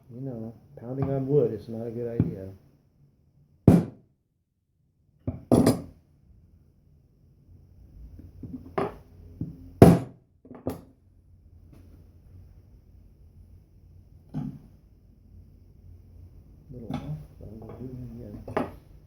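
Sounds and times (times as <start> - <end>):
knocks on a wooden box lid: 3.7 - 4.0.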